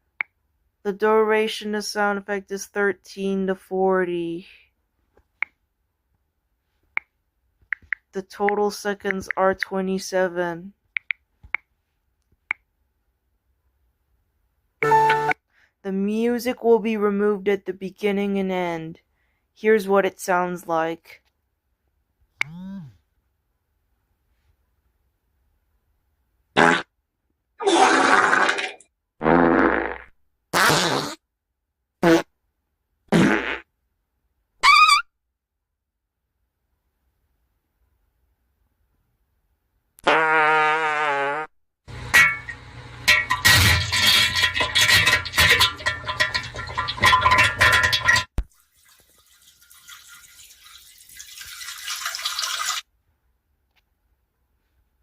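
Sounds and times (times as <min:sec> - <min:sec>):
buzzing fart sounds: 0:26.6 - 0:26.9, 0:27.8 - 0:31.2, 0:32.0 - 0:32.3, 0:33.1 - 0:33.7, 0:40.0 - 0:41.5
urine stream into toilet: 0:42.0 - 0:52.9.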